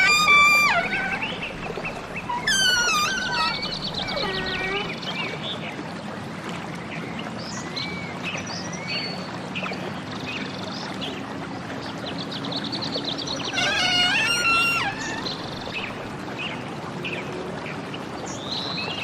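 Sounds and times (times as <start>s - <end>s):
birds chirping and whistling: 0.0s - 4.9s
running water: 0.0s - 19.0s.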